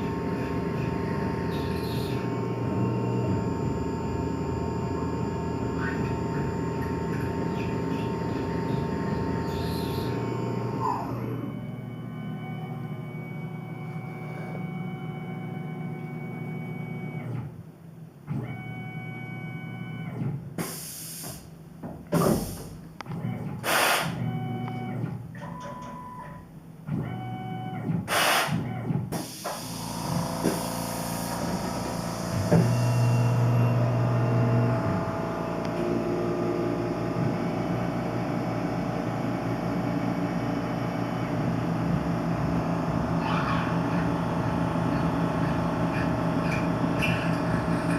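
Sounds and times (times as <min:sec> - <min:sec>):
milling machine motor whine: 0:00.0 - 0:17.5, 0:28.7 - 0:47.9
low machine hum: 0:00.0 - 0:20.4, 0:29.6 - 0:47.9
hissing bursts: 0:23.6 - 0:24.2, 0:28.1 - 0:28.6.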